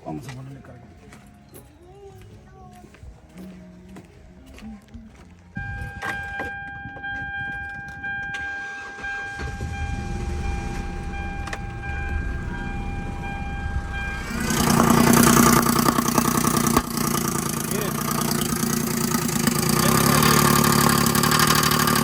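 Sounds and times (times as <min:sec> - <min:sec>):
steady electronic tone: 0:05.6 - 0:19.8
car engine cranking and starting: 0:05.6 - 0:22.0.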